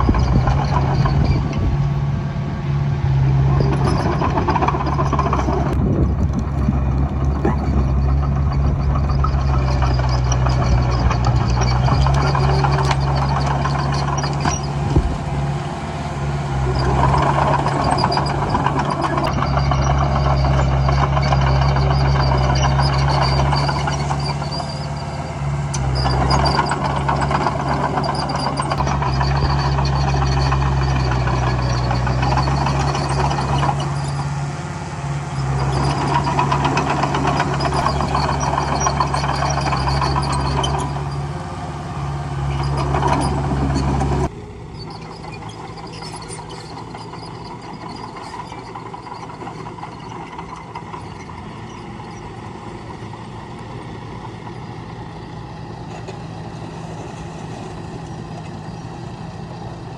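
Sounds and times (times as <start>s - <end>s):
dense rattling: 0.0s - 34.6s, 35.4s - 41.3s
bulldozer diesel engine running: 0.0s - 59.9s.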